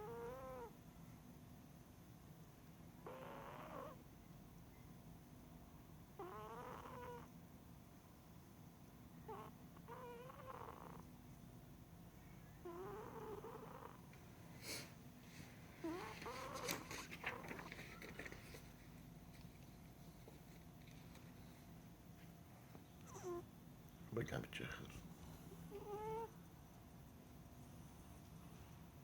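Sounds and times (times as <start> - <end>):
cat snoring: 0.0 - 0.7, 3.0 - 4.0, 6.2 - 7.3, 9.2 - 11.1, 12.6 - 14.9, 15.8 - 17.4, 23.1 - 23.4, 25.3 - 26.3.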